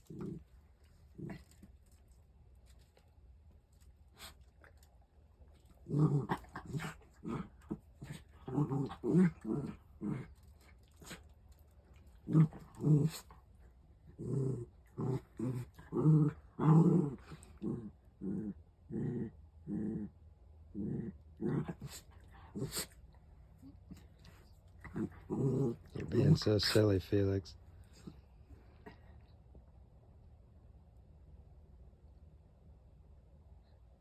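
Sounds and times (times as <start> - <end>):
dog growling: 0.0 - 2.0, 5.5 - 11.3, 12.0 - 13.4, 14.0 - 23.0, 23.6 - 27.0.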